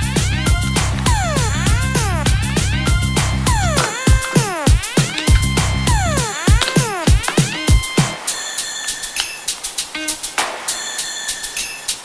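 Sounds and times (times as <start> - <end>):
kick-drum beat: 1.1 - 8.2.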